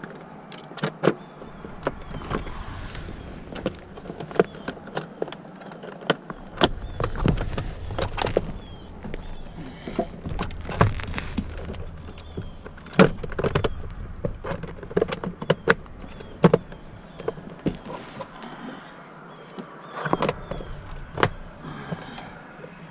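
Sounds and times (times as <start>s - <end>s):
low rumbling handling noise: 1.2s - 18.6s.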